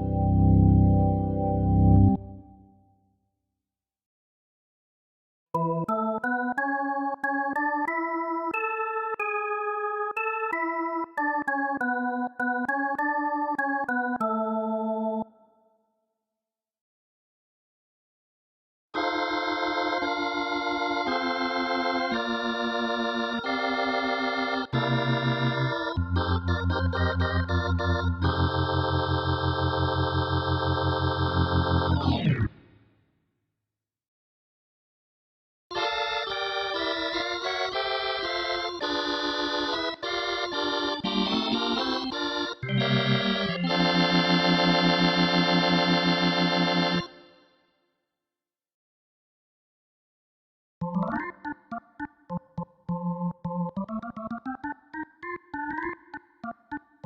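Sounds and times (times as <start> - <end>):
organ chords: 0.0 - 2.8, 5.6 - 15.3, 19.0 - 32.8, 35.7 - 47.4, 50.8 - 57.0.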